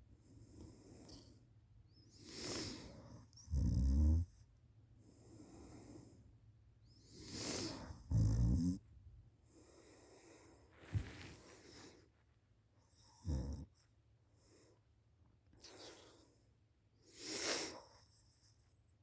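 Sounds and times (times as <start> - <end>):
loud low rough snores: 3.5 - 4.3, 7.2 - 8.8
soft breathy breath: 5.0 - 6.4, 7.0 - 8.1, 9.4 - 12.2.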